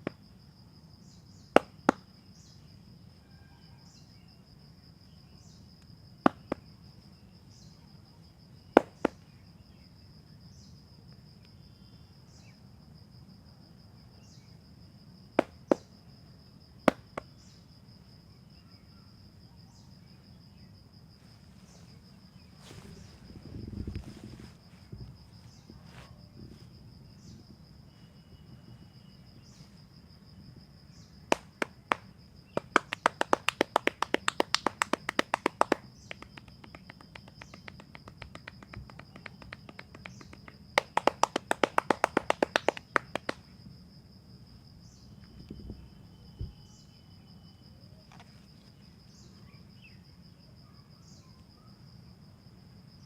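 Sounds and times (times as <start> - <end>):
hand slaps on back: 1.6 - 2.0, 6.2 - 6.7, 8.8 - 9.2, 15.4 - 15.9, 16.9 - 17.3, 31.3 - 43.4.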